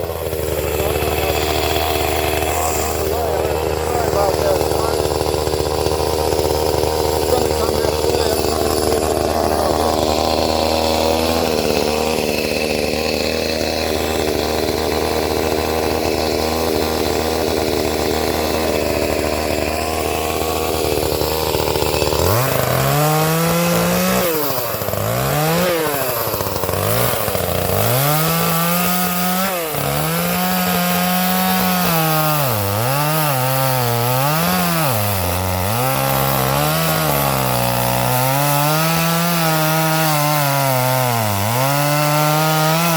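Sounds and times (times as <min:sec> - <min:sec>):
chainsaw cutting wood: 0:00.0 - 0:42.9.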